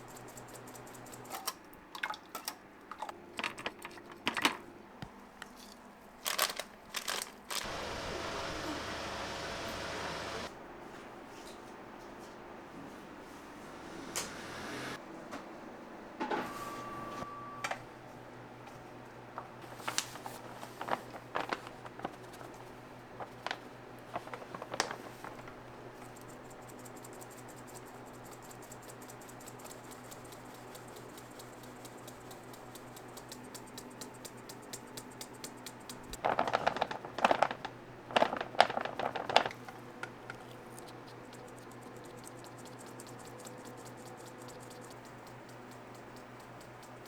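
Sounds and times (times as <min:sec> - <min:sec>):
steady machine hum: 0:07.6 - 0:10.5.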